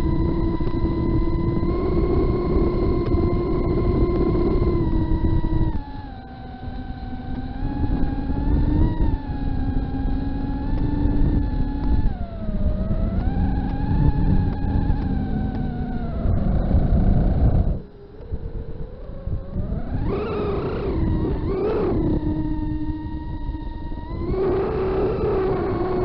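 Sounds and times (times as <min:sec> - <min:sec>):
deep rumble of air: 0:00.0 - 0:26.0
drone motors whining: 0:00.0 - 0:26.0.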